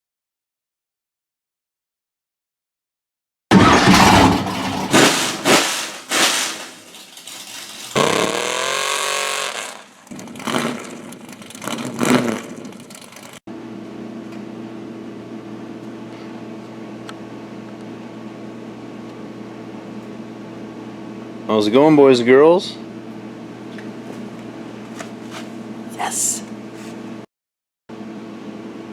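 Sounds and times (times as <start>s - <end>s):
engine revving: 7.8s - 13.4s.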